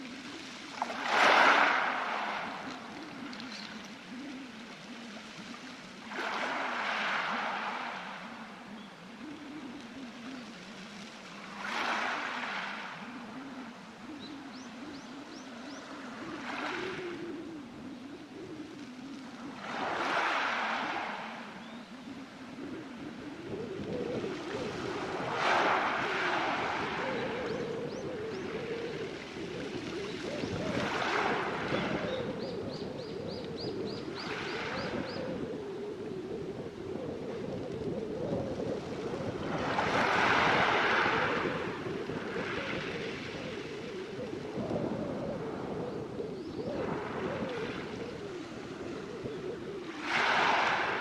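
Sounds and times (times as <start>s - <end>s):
waves washing over pebbles: 0.8s - 2.8s, 19.6s - 21.1s, 25.3s - 26.9s, 50.0s - 51.0s.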